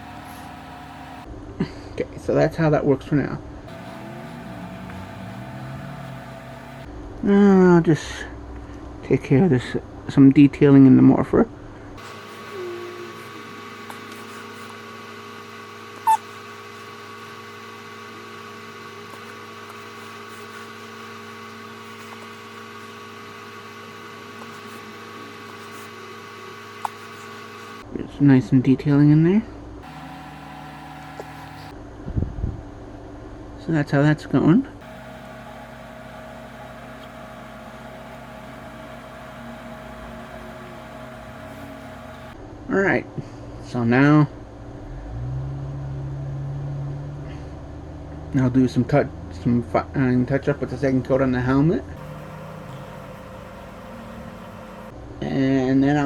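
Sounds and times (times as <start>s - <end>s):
steady electrical hum: 0.0s - 1.3s
steady mechanical hum: 0.0s - 49.6s, 51.2s - 56.0s.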